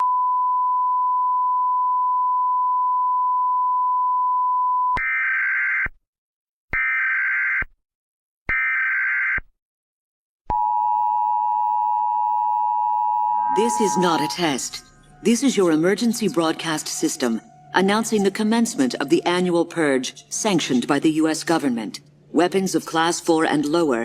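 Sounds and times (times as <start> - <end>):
steady single-pitch beep: 10.5 - 14.9
two-tone attention signal: 10.5 - 15.0.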